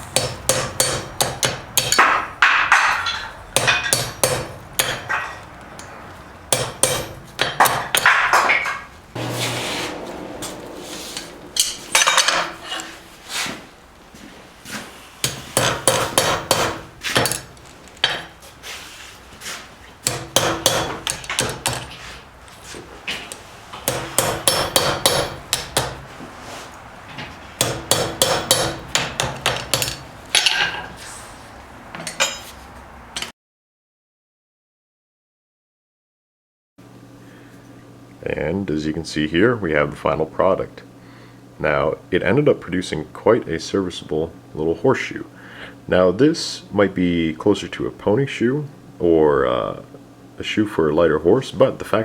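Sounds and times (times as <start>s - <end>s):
hammer striking steel on anvil: 0.2s - 5.4s, 6.5s - 13.0s, 15.2s - 18.3s, 20.0s - 21.9s, 23.8s - 26.0s, 27.6s - 30.9s
metallic ring: 9.2s - 13.2s.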